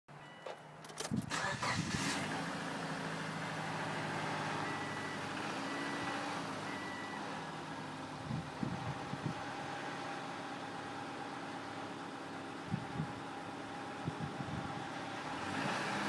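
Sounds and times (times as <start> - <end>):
car engine starting and running: 0.4 - 16.0.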